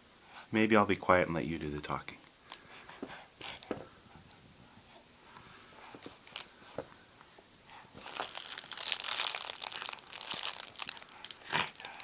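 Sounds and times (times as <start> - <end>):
crinkling and rustling: 2.4 - 12.0.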